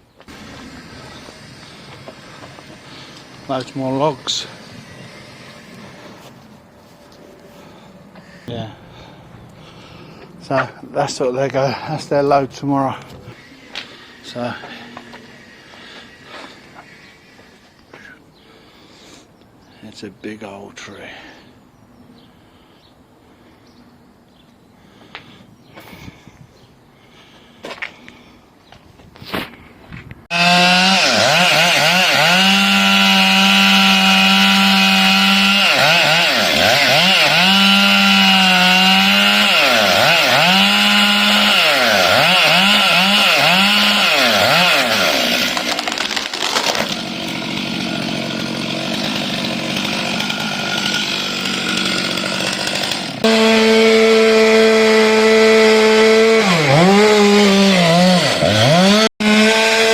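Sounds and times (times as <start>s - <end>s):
chainsaw cutting wood: 0.2s - 6.5s, 13.0s - 17.8s, 30.3s - 59.9s.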